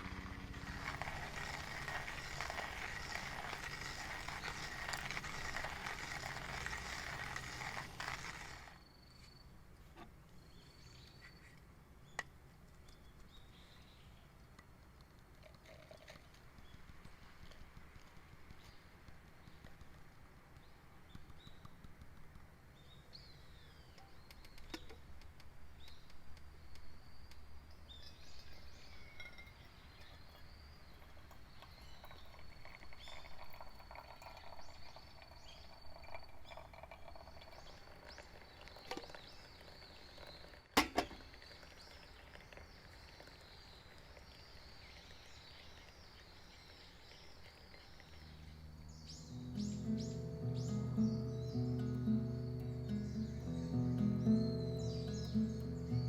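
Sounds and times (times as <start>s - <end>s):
low outdoor hum: 0.0s - 15.1s, 44.1s - 56.0s
small birds chirping: 16.5s - 40.6s, 41.3s - 56.0s.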